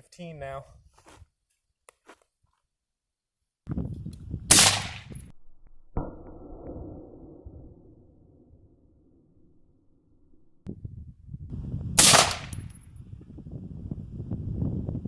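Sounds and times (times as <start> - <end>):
rifle gunshots: 4.5 - 5.2, 12.0 - 12.8.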